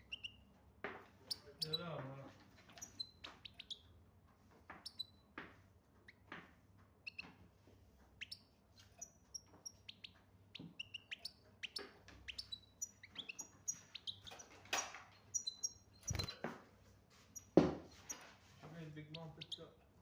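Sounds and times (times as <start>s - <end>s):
bird chirps and twitters: 0.0s - 0.5s, 1.2s - 4.0s, 4.8s - 5.3s, 7.0s - 7.4s, 8.2s - 16.4s, 19.0s - 19.8s.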